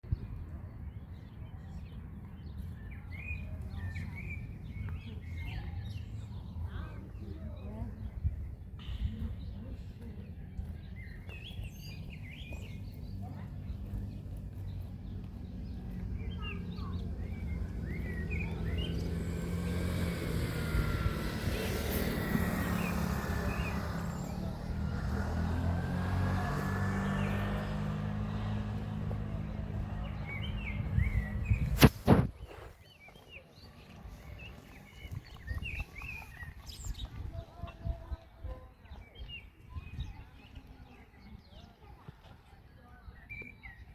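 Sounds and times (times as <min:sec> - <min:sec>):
birds chirping: 0:00.1 - 0:43.9
vehicle engine rumbling: 0:10.3 - 0:32.8.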